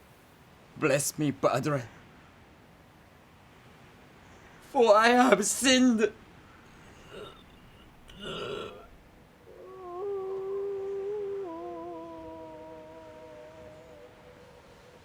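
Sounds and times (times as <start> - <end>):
soft breaths: 6.4 - 9.0.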